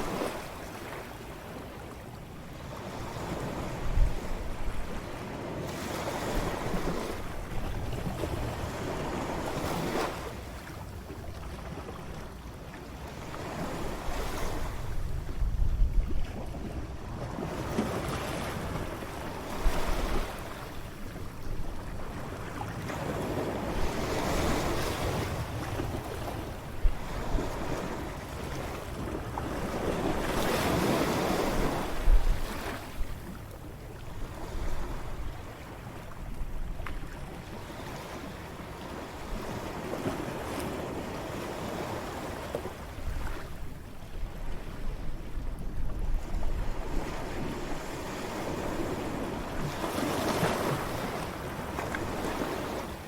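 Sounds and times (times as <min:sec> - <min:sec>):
ocean waves breaking on shore: 0:00.0 - 0:53.0
wind buffeting microphone: 0:02.8 - 0:10.1, 0:13.4 - 0:37.4, 0:43.0 - 0:52.9.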